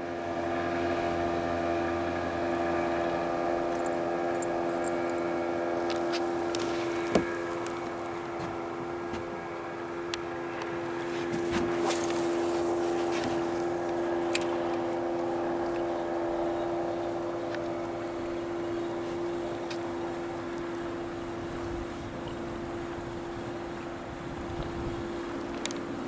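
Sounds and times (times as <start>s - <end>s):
outboard motor running: 0.0s - 26.0s
light clicks: 25.3s - 25.9s.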